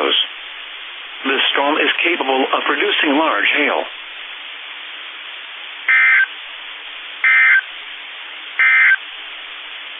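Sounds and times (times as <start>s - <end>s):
radio hiss: 0.0s - 9.9s
buzzing digital data bursts: 5.9s - 6.3s, 7.2s - 7.7s, 8.6s - 9.0s.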